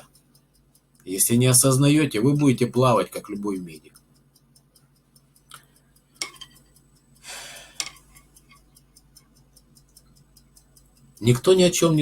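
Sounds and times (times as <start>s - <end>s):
faint even ticking: 0.0s - 12.0s
short breathy hiss: 7.2s - 7.9s.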